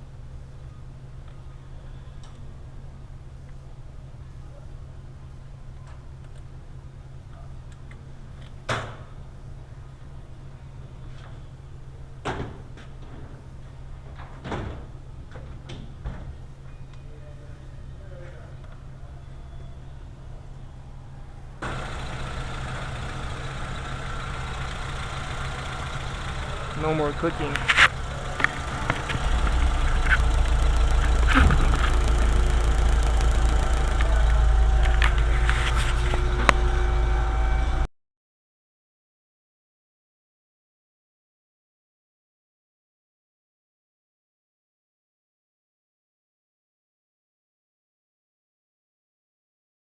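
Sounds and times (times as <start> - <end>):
sharp clunks and clicks: 21.6 - 36.7
car engine rumbling: 21.6 - 37.9
steady low hum: 21.6 - 37.9.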